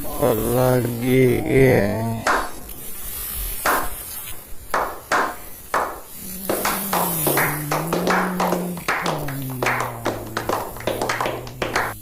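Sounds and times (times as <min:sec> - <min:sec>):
sharp taps and slaps: 0:02.2 - 0:02.6, 0:03.6 - 0:12.0
low hum sliding in pitch: 0:06.3 - 0:12.0.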